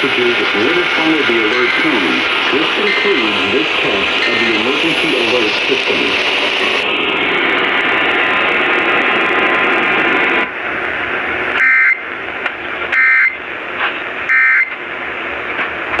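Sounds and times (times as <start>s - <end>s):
two-tone warble data tones: 0.0s - 6.8s
radio static with hum: 0.0s - 16.0s.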